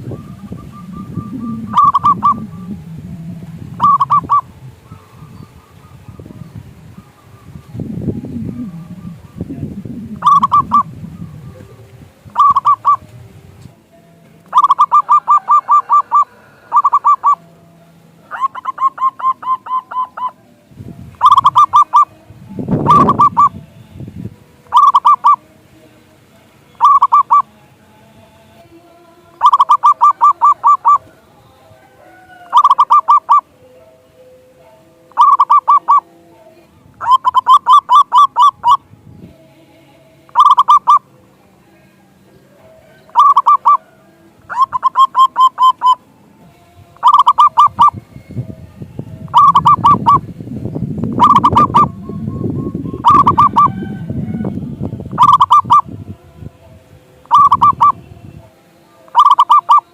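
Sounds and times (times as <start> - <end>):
doves cooing: 0.0 - 13.2, 14.4 - 17.5, 18.2 - 20.4, 21.2 - 22.1, 22.8 - 23.5, 24.6 - 25.4, 26.8 - 27.5, 29.4 - 31.2, 31.8 - 33.5, 35.1 - 36.2, 37.0 - 38.8, 40.3 - 41.1, 42.2 - 46.1, 47.0 - 48.0, 49.3 - 50.3, 51.1 - 55.9, 57.2 - 58.0, 59.1 - 59.9.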